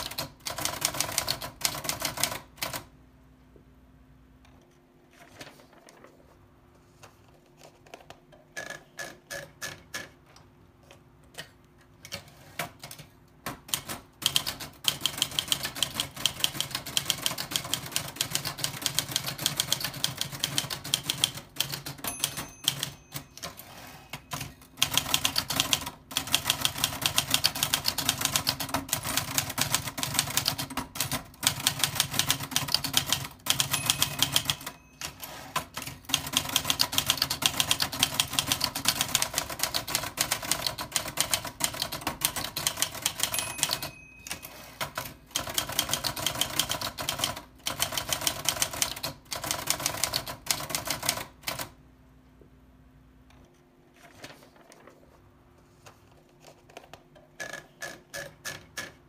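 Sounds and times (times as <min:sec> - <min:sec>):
typewriter typing: 0:00.0 - 0:02.9, 0:08.6 - 0:10.2, 0:11.4 - 0:51.8, 0:57.4 - 0:59.0.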